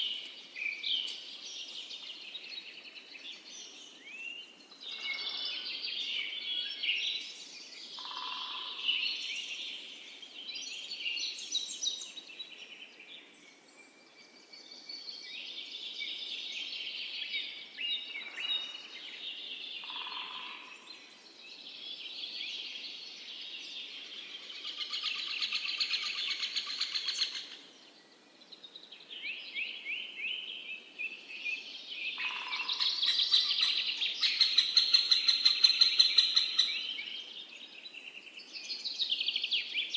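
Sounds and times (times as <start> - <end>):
songbirds singing and chirping: 0.0 - 39.9.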